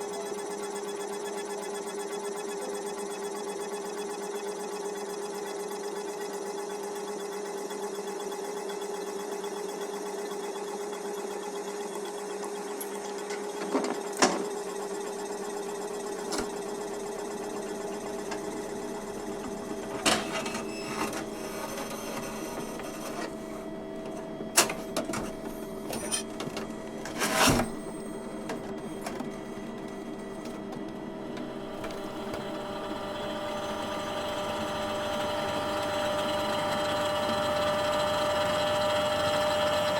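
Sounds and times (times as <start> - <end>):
copy machine humming: 14.6 - 39.9.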